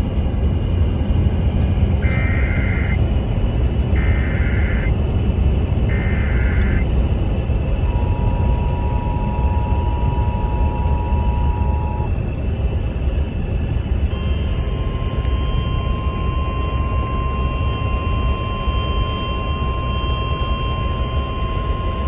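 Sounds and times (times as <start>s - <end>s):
low background rumble: 0.0s - 22.0s
screechy digital header burst: 2.0s - 3.0s, 3.9s - 4.9s, 5.9s - 6.8s
two-tone attention signal: 2.0s - 3.0s, 4.0s - 4.9s, 5.9s - 6.8s, 7.8s - 12.1s, 14.1s - 22.0s.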